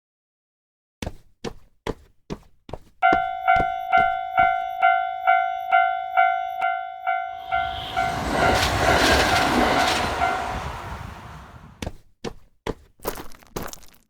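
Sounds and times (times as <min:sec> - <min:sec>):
railroad crossing bell dings: 0:03.0 - 0:11.7.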